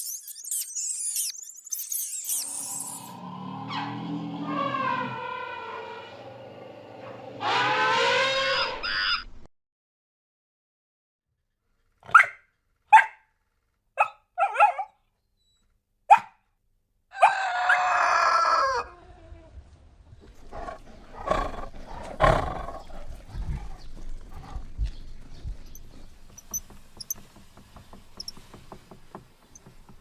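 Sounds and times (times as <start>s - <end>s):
rough noisy animal sounds: 2.3s - 9.2s, 20.2s - 30.0s
drawn-out pitched animal call: 2.3s - 9.3s
dog barking: 7.0s - 7.2s, 12.0s - 13.3s, 14.0s - 15.0s, 16.1s - 16.4s.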